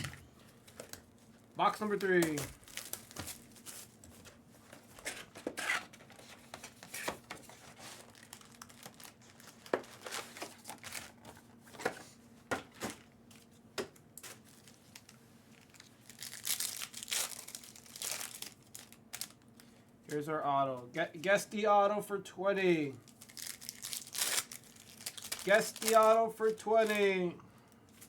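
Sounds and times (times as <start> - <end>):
packaging rustling: 0.0 - 12.1, 14.2 - 19.6, 23.0 - 27.1
cardboard packaging tearing: 2.0 - 3.9, 5.0 - 11.3, 14.2 - 19.3, 23.1 - 26.2.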